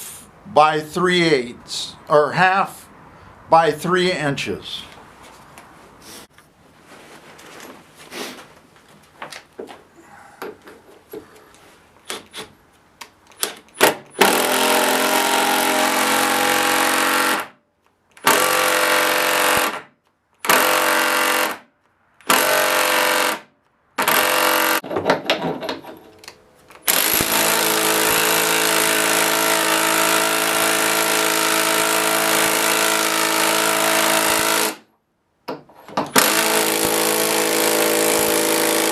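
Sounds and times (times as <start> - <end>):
cordless power tool motor: 14.2 - 17.4, 26.9 - 34.8, 36.2 - 38.9.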